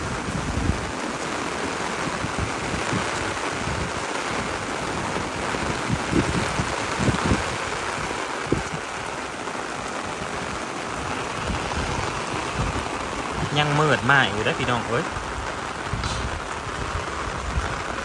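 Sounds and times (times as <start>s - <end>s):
heavy rain falling: 0.0s - 18.0s
low thumps: 15.8s - 16.6s.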